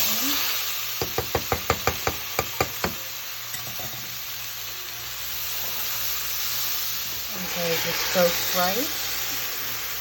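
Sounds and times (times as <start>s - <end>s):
food sizzling in hot oil: 0.0s - 10.0s.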